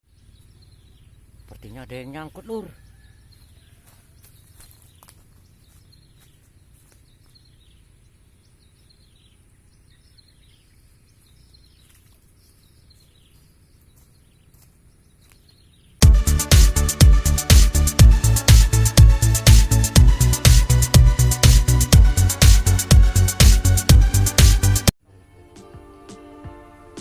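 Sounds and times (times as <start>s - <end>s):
faint bird chirps: 0.0s - 16.0s
electronic dance music: 16.0s - 24.9s.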